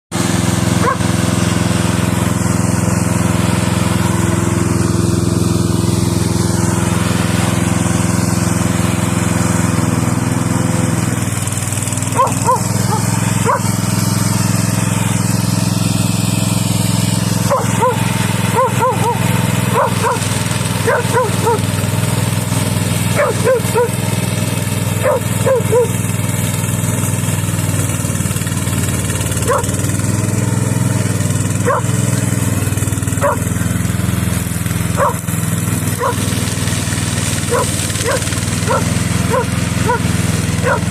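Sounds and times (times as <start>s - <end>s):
lawn mower engine running: 0.1s - 40.9s
dog barking: 0.8s - 1.0s, 12.1s - 13.7s, 17.5s - 21.7s, 23.2s - 24.0s, 25.0s - 25.9s, 29.4s - 29.8s, 31.6s - 31.9s, 33.2s - 33.4s, 35.0s - 35.2s, 36.0s - 36.2s, 37.5s - 40.9s.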